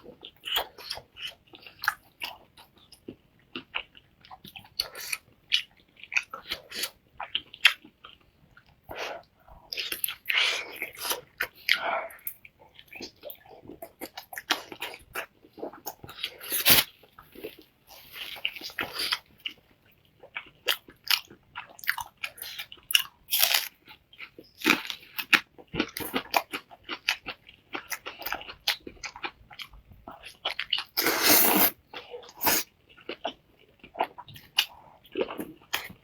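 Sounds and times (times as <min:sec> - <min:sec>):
person chewing and smacking: 0:00.0 - 0:36.0.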